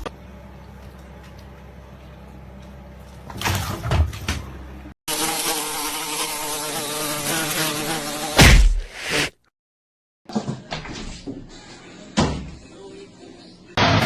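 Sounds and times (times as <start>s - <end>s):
sharp thump: 8.4s - 9.0s.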